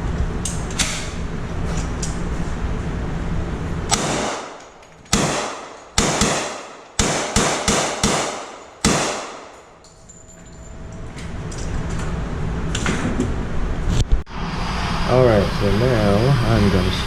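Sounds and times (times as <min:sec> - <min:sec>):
gunshots: 0:03.9 - 0:09.8.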